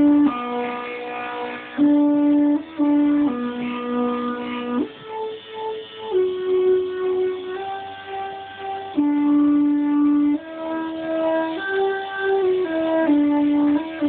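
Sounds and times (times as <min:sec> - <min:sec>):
stepper motors playing a tune: 0:00.0 - 0:14.0.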